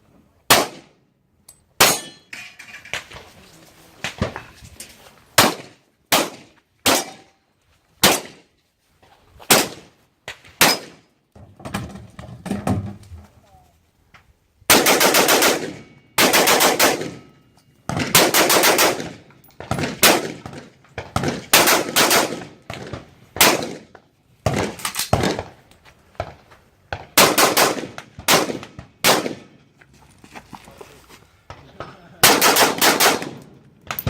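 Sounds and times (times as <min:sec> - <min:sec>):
semi-automatic gunfire: 0:00.5 - 0:00.9, 0:14.7 - 0:17.2, 0:18.0 - 0:19.1, 0:21.5 - 0:22.5, 0:27.2 - 0:29.5, 0:32.2 - 0:33.4.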